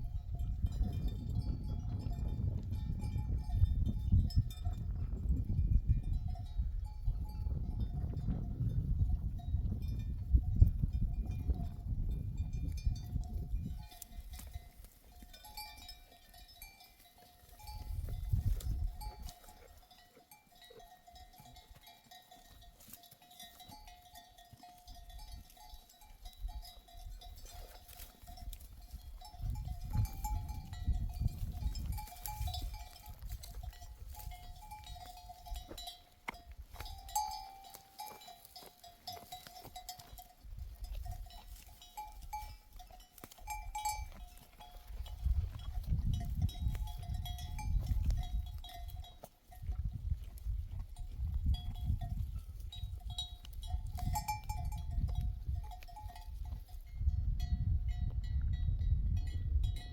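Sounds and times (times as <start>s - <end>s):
sheep bells clinking: 0.0s - 59.9s.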